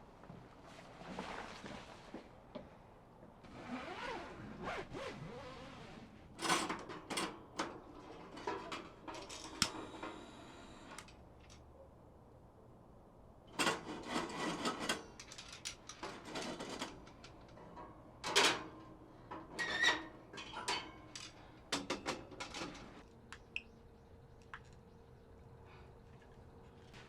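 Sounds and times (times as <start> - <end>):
faint steady hum: 20.4 - 27.0.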